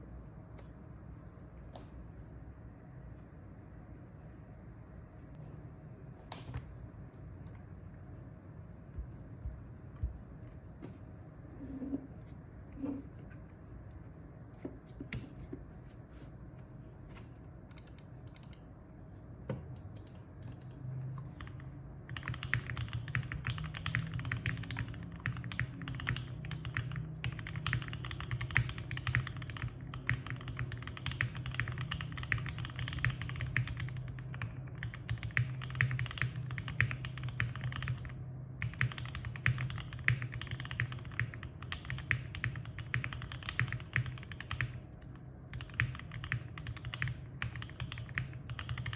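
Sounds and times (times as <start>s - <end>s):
typing on mechanical keyboard: 19.8s - 44.8s, 45.5s - 48.9s.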